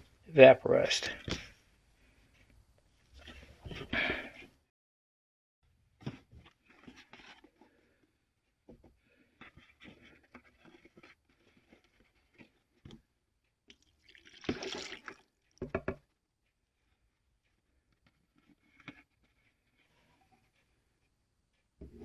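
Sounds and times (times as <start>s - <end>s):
liquid splashing and dribbling: 13.7s - 15.5s.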